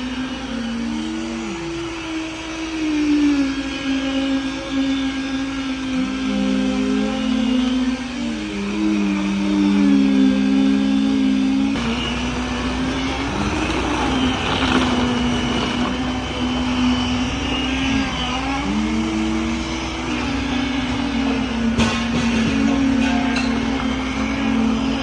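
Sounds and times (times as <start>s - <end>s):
vehicle engines humming: 11.6s - 25.0s.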